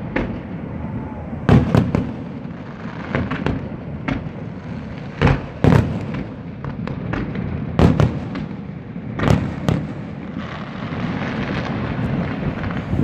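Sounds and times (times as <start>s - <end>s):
rumbling echo: 0.0s - 6.8s, 10.8s - 13.0s
fireworks bangs: 0.0s - 13.0s
fireworks crackling hiss: 0.0s - 13.0s
fireworks pops: 2.9s - 13.0s.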